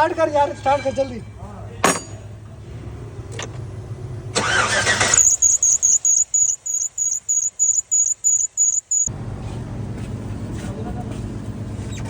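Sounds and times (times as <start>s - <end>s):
vehicle engine starting: 2.4s - 7.9s
high-pitched squeak: 4.8s - 9.1s.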